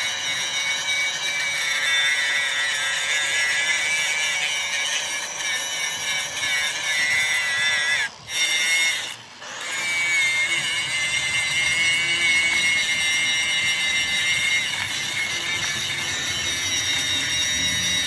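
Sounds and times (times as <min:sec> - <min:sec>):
power tool high-pitched whine: 0:00.0 - 0:18.0.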